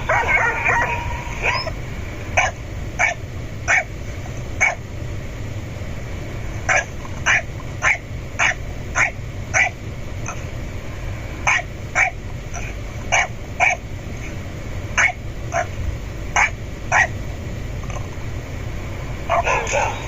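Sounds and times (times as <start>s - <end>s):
dog barking: 0.0s - 1.8s, 2.4s - 3.9s, 4.6s - 4.8s, 6.7s - 10.4s, 11.4s - 13.8s, 15.0s - 15.8s, 16.4s - 17.2s, 19.3s - 20.0s.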